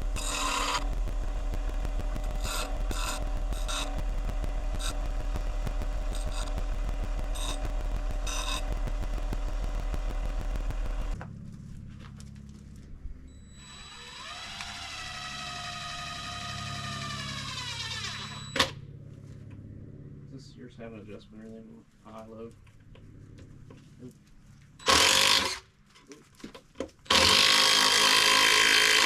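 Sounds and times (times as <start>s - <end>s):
power drill boring into wood: 0.0s - 1.0s, 2.3s - 4.0s, 7.3s - 7.7s, 8.3s - 8.7s, 13.6s - 18.8s, 24.8s - 25.6s, 27.1s - 29.0s
rising whine: 0.0s - 21.6s.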